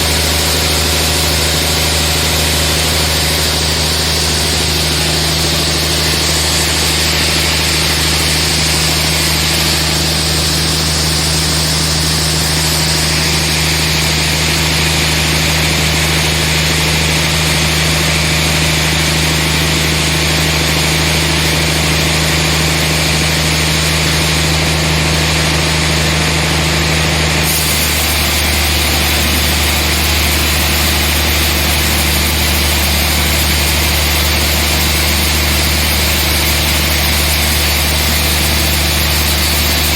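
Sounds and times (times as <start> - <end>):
saw hissing through logs: 0.0 - 39.9.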